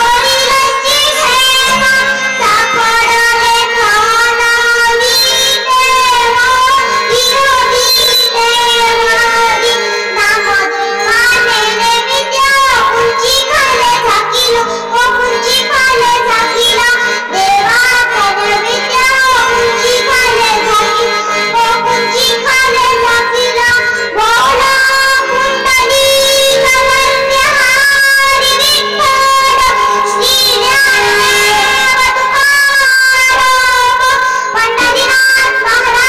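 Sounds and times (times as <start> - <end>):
child singing: 0.0 - 36.0
instrumental accompaniment: 0.0 - 36.0
steady drone: 15.9 - 34.9.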